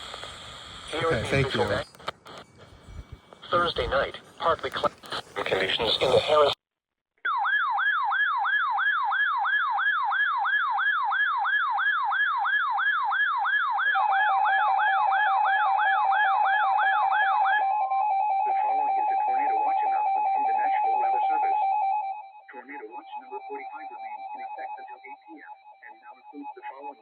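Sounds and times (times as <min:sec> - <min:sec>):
warbling electronic siren: 0:07.3 - 0:27.0.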